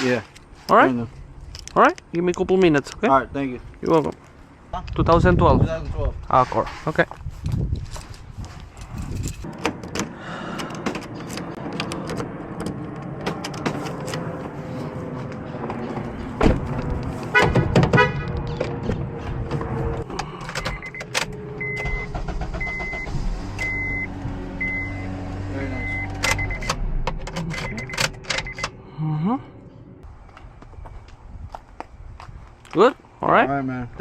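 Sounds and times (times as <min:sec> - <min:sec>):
keys jingling and clicking: 0:07.8 - 0:09.5
short electronic beeps: 0:21.6 - 0:25.1, 0:25.7 - 0:26.7, 0:27.6 - 0:28.6.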